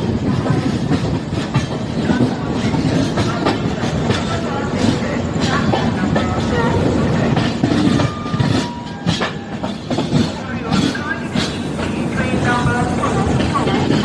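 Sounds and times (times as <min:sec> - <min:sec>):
train coaches rumbling: 0:00.0 - 0:14.0
wheels clicking over rail joints: 0:00.0 - 0:14.0.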